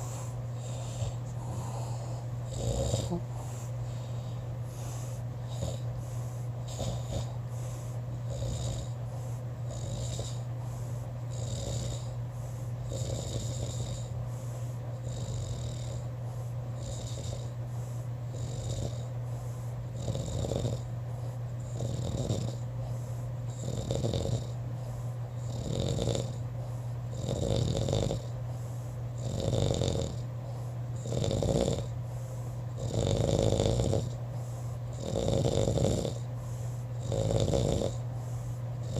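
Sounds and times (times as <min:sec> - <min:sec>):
person snoring: 0:00.0 - 0:03.7, 0:21.7 - 0:22.6, 0:23.5 - 0:24.6, 0:25.4 - 0:26.4, 0:27.1 - 0:28.3, 0:29.2 - 0:30.2, 0:31.0 - 0:31.9, 0:32.8 - 0:34.2, 0:34.9 - 0:36.2, 0:37.0 - 0:38.0.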